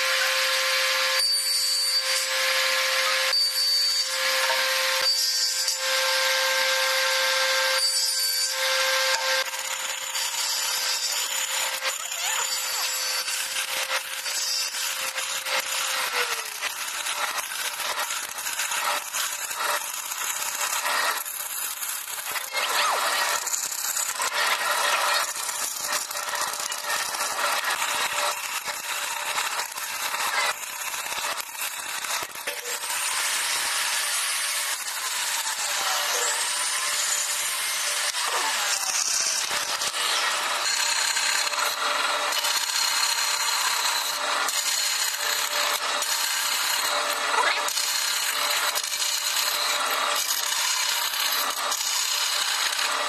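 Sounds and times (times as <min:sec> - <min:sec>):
power tool rasping wood: 0:00.0 - 0:53.0.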